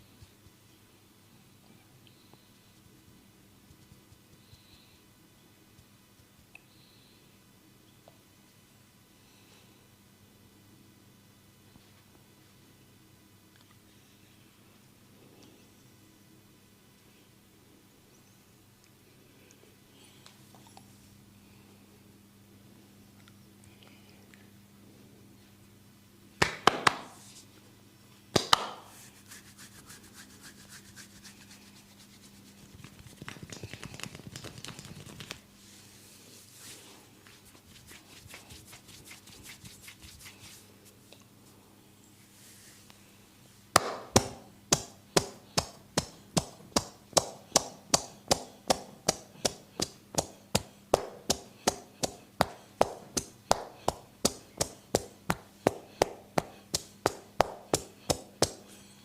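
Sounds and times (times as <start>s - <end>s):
hands rubbing hair and scalp: 2.7s - 4.9s, 5.7s - 6.6s, 28.4s - 41.6s, 44.2s - 58.7s.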